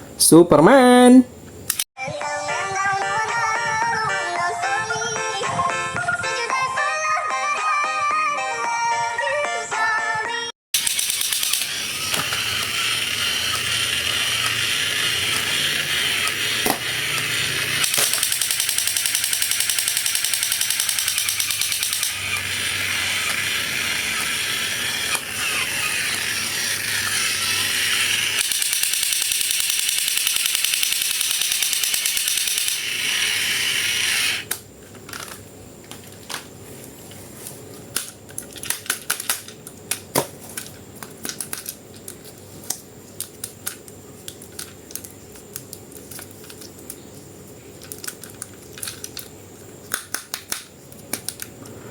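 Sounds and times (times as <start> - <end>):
mechanical ratcheting and whirring: 10.8 - 35.3.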